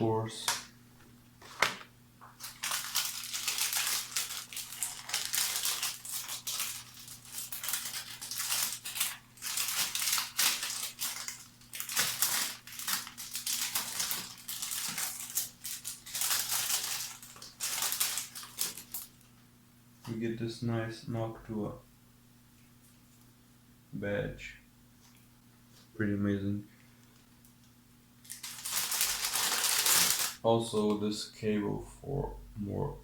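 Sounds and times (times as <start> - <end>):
faint low hum: 0.0 - 33.0
packaging crinkling and rustling: 1.4 - 19.4, 28.2 - 30.4.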